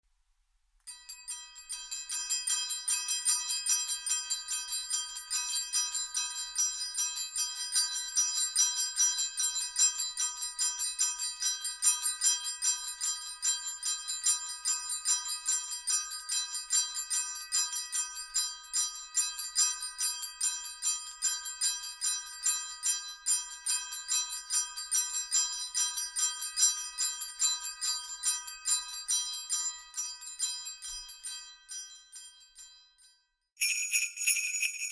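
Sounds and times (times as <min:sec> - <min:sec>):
sleigh bells jingling: 0:33.6 - 0:34.9.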